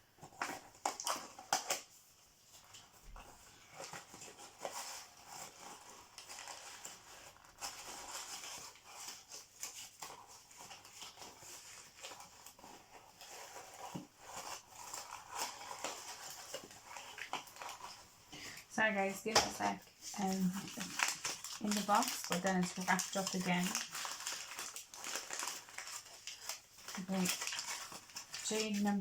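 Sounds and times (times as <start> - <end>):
cardboard and wrapping rustling: 0.0 - 29.0.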